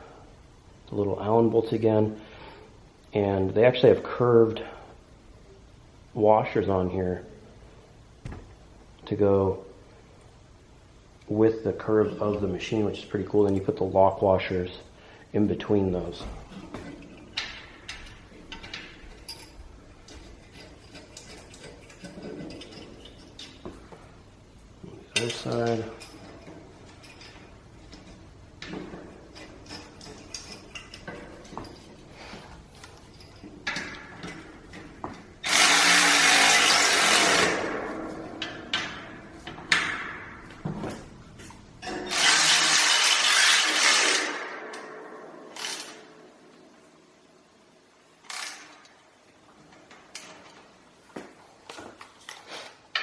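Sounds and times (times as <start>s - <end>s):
power drill driving bolts: 35.4s - 37.7s, 41.8s - 44.4s, 45.6s - 46.0s.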